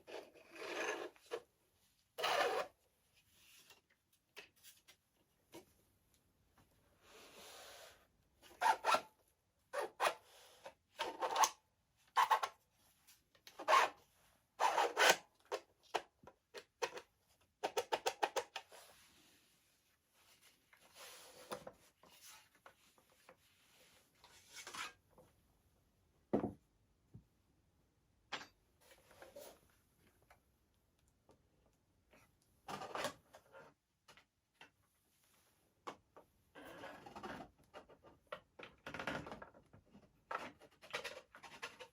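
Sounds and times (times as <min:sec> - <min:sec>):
plastic parts rubbing and scraping: 0:38.9 - 0:41.9.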